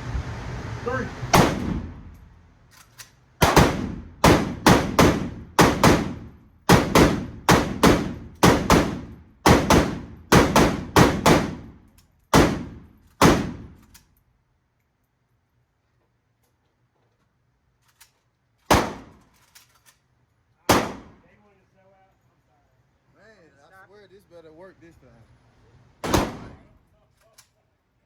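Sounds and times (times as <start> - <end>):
rifle shots echoing: 1.3 - 2.1, 3.4 - 13.8, 18.7 - 19.2, 20.7 - 21.2, 26.0 - 26.7.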